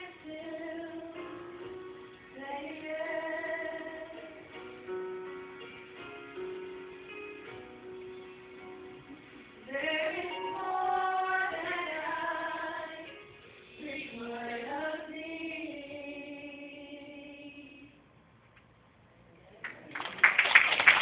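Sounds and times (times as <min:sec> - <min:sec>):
women singing gospel song: 0:00.0 - 0:01.4, 0:02.3 - 0:04.4, 0:09.6 - 0:13.2, 0:13.8 - 0:17.9.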